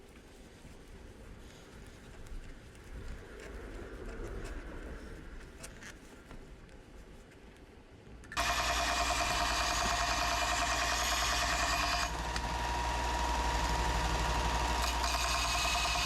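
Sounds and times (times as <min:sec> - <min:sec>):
machine running with fast rattle: 0:08.4 - 0:16.0.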